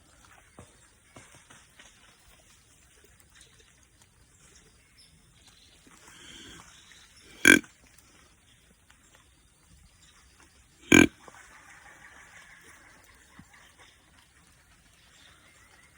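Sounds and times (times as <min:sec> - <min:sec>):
deer grunt call: 0:06.1 - 0:06.6, 0:07.3 - 0:07.6, 0:10.8 - 0:11.1.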